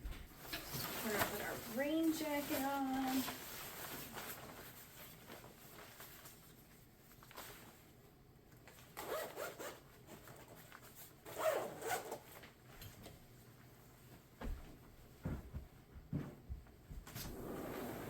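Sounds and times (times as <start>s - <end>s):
rain jacket zipper being pulled: 9.0s - 9.8s, 11.3s - 12.2s, 17.2s - 18.0s.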